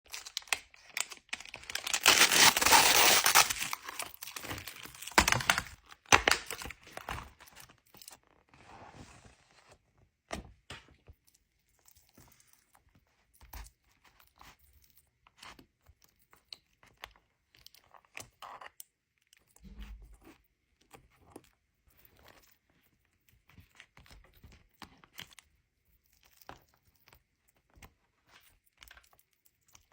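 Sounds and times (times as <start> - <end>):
packaging tearing and crinkling: 0.1 - 7.5.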